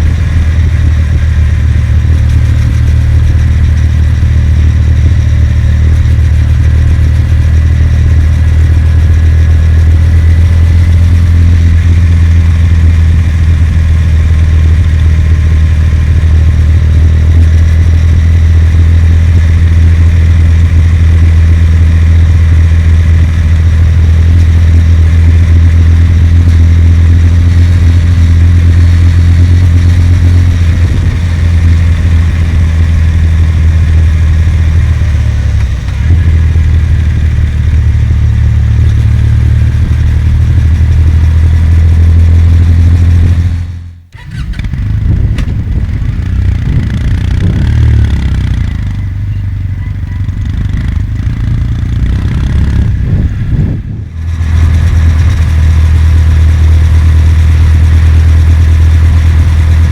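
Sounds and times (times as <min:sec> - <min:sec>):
motorcycle engine droning: 0:00.0 - 0:59.9.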